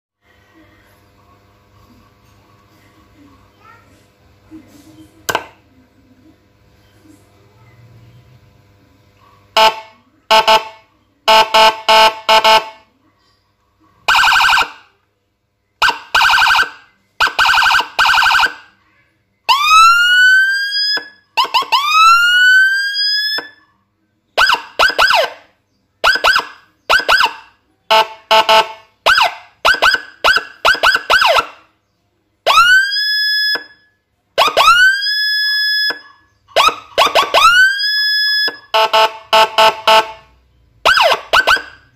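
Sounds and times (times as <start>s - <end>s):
electronic police siren: 9.6s - 12.9s, 14.1s - 14.9s, 15.8s - 18.7s, 19.5s - 23.7s, 24.4s - 31.7s, 32.4s - 41.9s.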